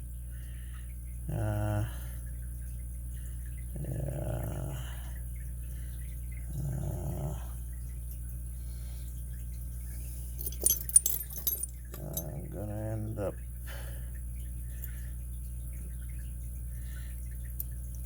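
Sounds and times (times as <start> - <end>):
person murmuring: 1.3 - 2.2, 12.0 - 13.4
metallic clicks of lock tools: 10.4 - 12.4.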